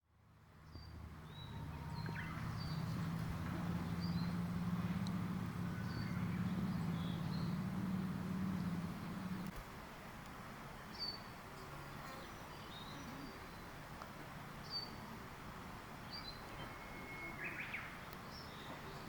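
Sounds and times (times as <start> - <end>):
steady low buzz: 0.8 - 9.5.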